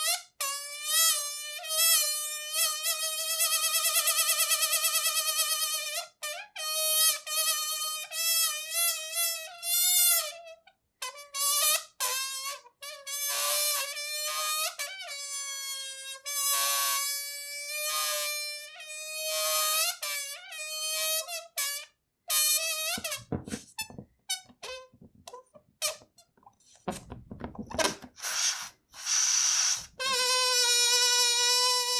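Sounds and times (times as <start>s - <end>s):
balloon rubbing squeaks: 0.0s - 31.9s
balloon squealing: 11.1s - 26.0s, 26.8s - 31.9s.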